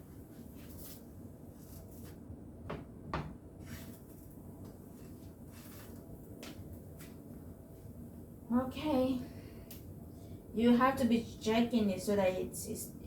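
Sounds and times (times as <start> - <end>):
low steady background noise: 0.0 - 13.0.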